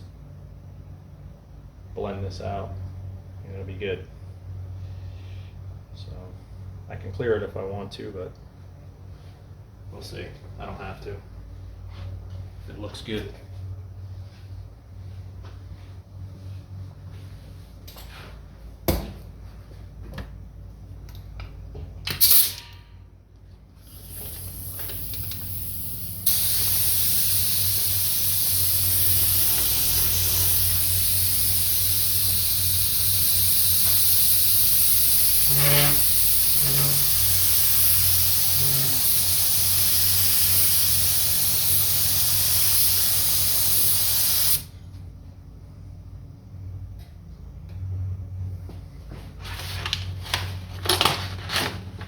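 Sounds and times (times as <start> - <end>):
spray can hissing: 23.9 - 44.7.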